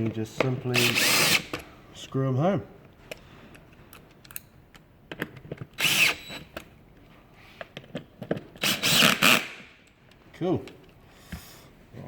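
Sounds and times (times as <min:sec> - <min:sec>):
power drill driving a screw: 0:00.8 - 0:01.5, 0:05.8 - 0:06.5, 0:08.6 - 0:09.7.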